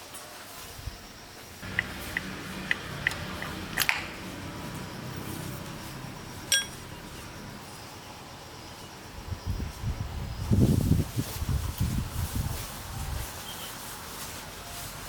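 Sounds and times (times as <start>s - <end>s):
metal tools clinking: 6.5s - 6.9s.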